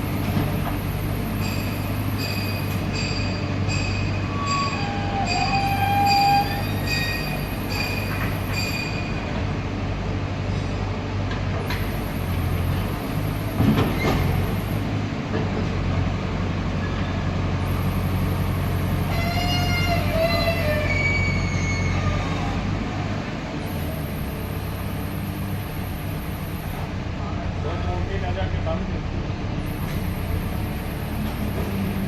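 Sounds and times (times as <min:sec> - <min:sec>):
diesel engine running: 0:00.0 - 0:04.5, 0:06.7 - 0:32.0
high metallic squeals: 0:01.4 - 0:09.3, 0:17.7 - 0:22.7.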